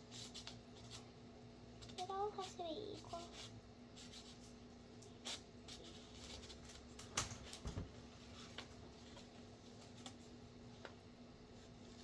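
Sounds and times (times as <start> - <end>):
paper rustling: 1.8 - 11.0.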